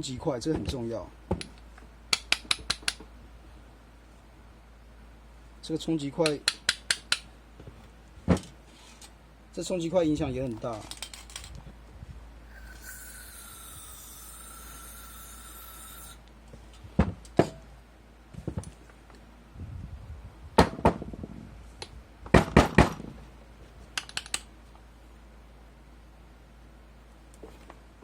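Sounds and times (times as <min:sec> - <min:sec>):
metal parts knocking and clinking: 0:10.5 - 0:11.6.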